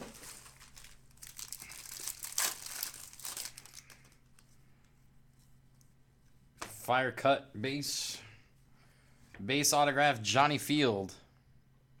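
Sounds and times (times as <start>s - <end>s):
card pack wrapper crinkling: 0.0s - 4.4s.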